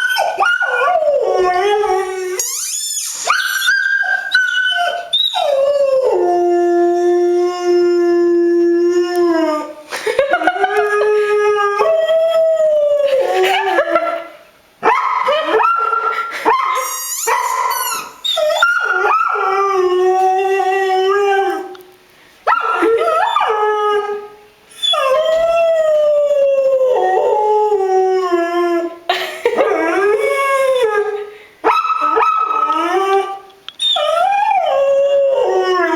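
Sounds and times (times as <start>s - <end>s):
dog howling: 0.0s - 2.6s, 32.0s - 35.9s.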